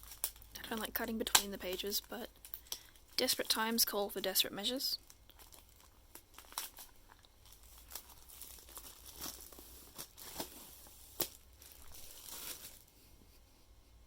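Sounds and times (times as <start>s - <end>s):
plastic shrink-wrap crinkling: 0.0s - 12.9s.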